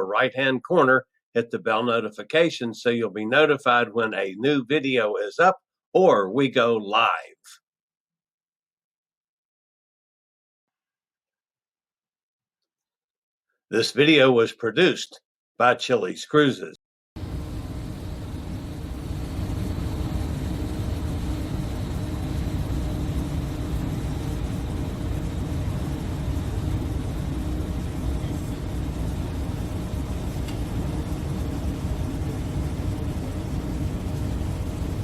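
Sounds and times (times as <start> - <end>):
faint hums: 17.2 - 35.0
low rumbling noise: 17.2 - 35.0.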